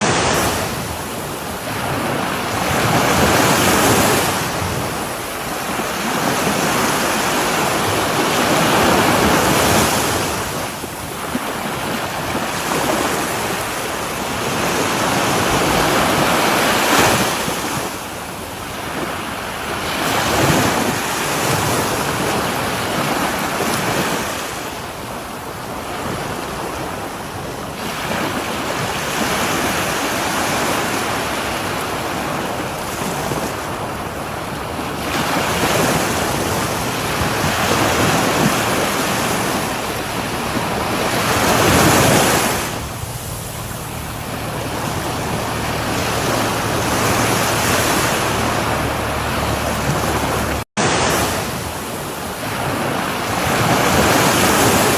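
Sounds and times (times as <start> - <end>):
sea waves breaking on shore: 0.0 - 54.9.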